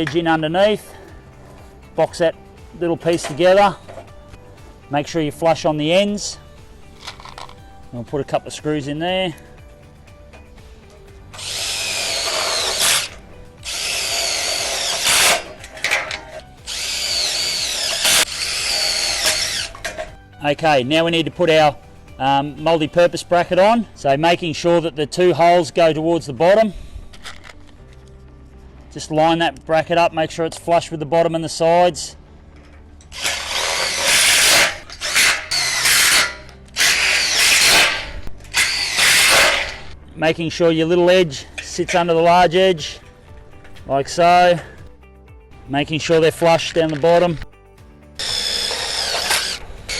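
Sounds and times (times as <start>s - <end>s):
power drill driving screws: 11.3s - 20.2s, 33.1s - 39.9s, 48.2s - 49.9s.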